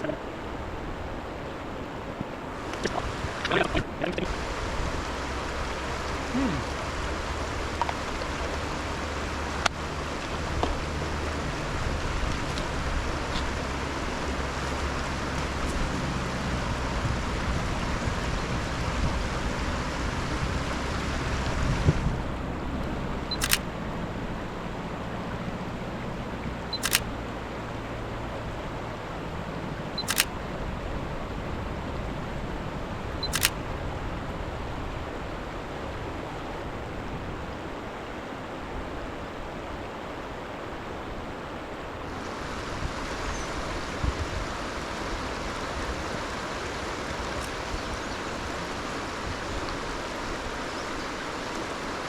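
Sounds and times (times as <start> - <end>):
rushing water or wind: 0.0 - 52.0
camera shutter firing: 23.3 - 23.7, 26.8 - 27.1, 30.0 - 30.4, 33.3 - 33.6.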